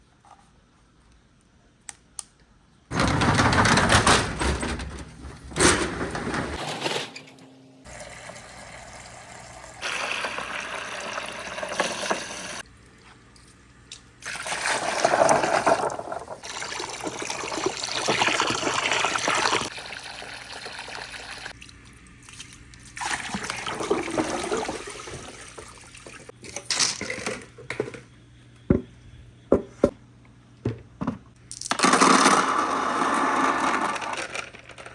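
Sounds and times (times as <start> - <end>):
water pouring and splashing: 14.2 - 26.3.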